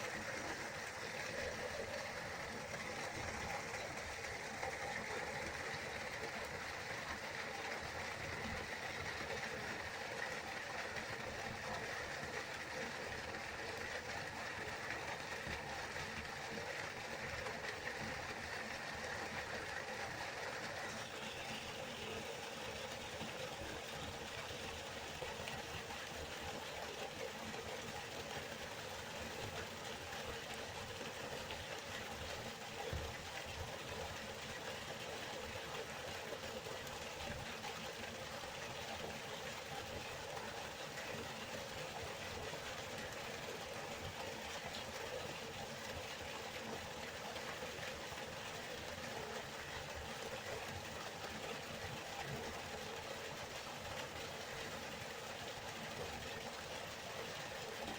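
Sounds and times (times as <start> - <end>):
river flowing: 0.0 - 57.9.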